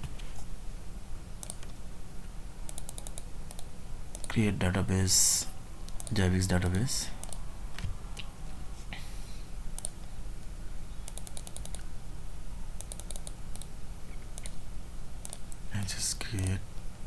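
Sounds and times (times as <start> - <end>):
low steady hum: 0.0 - 17.0
keyboard typing: 1.4 - 1.7, 2.7 - 4.4, 5.9 - 7.9, 11.1 - 11.9, 12.8 - 13.7, 14.4 - 14.6, 15.2 - 16.6.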